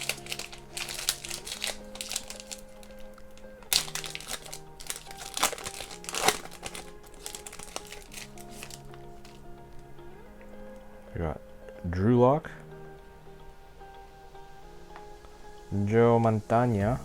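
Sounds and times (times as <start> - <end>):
plastic wrapper crinkling: 0.0 - 9.4
soft background music: 0.0 - 17.0.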